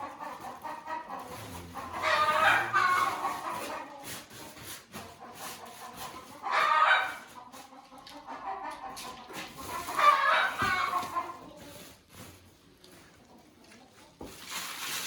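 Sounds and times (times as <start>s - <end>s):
loud chicken calls: 0.0s - 4.1s, 6.1s - 7.4s, 8.2s - 11.3s
chickens clucking: 0.0s - 14.4s.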